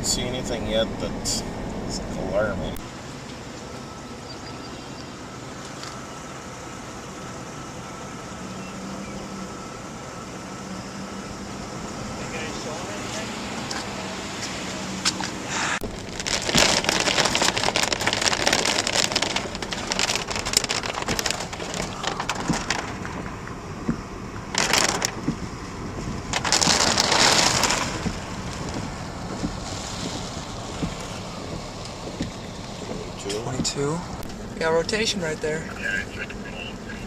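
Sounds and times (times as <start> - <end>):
heavy rain pelting a car: 0.0 - 37.0.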